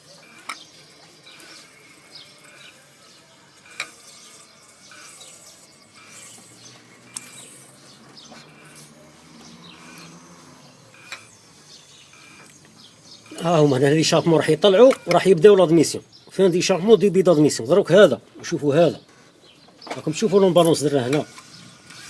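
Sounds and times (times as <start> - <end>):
birds chirping: 0.0 - 22.0
sharp clicks: 0.2 - 1.7, 3.6 - 5.3, 5.9 - 7.6, 10.9 - 11.4, 14.7 - 15.3.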